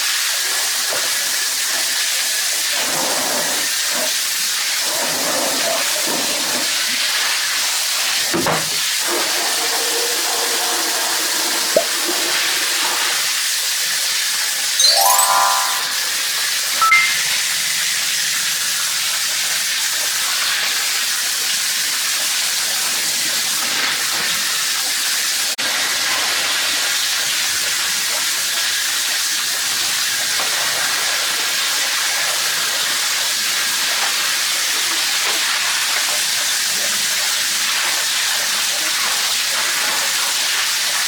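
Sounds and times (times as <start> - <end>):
brief high tone: 14.8 - 16.2, 16.8 - 18.0.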